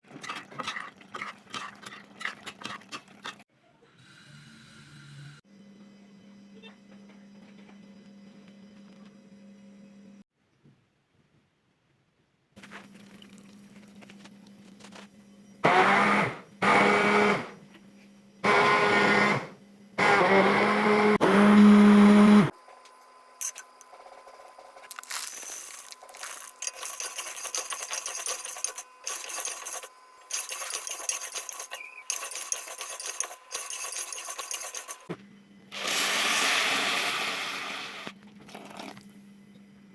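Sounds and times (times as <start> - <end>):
electric blender motor humming: 15.6 - 17.6, 18.4 - 22.6.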